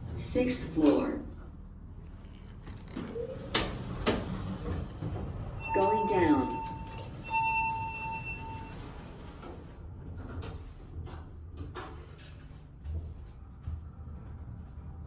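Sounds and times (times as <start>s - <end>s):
elevator rumble: 2.6s - 11.0s
elevator doors clicking and knocking: 2.7s - 9.4s
elevator chime: 5.6s - 9.4s.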